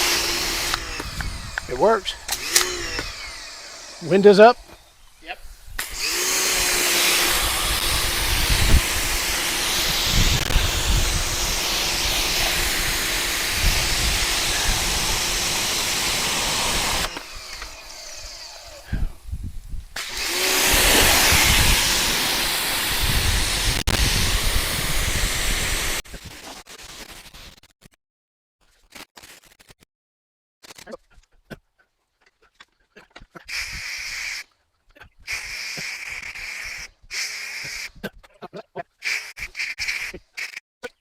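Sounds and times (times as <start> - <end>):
motor hum: 0.0 - 4.9, 5.8 - 18.8, 20.0 - 26.0
pressure washer water jet hiss: 5.9 - 17.2, 20.0 - 26.0.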